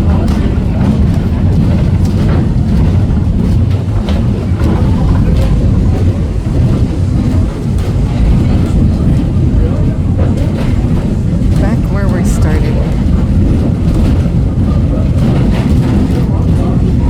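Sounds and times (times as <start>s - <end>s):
train rumbling: 0.0s - 17.0s.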